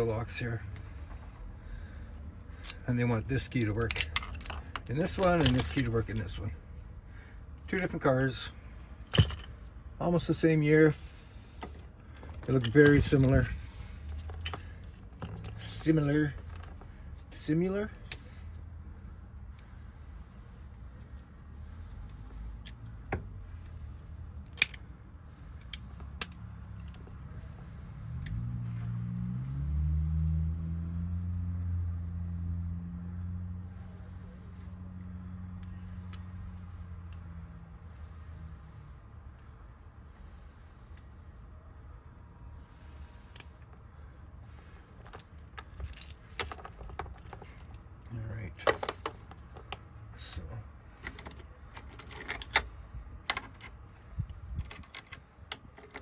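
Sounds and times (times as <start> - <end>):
low steady hum: 0.0 - 56.0
metal lock parts clicking: 2.4 - 6.4, 11.6 - 18.3, 45.0 - 49.8, 51.0 - 56.0
keys clicking and jingling: 51.1 - 52.7.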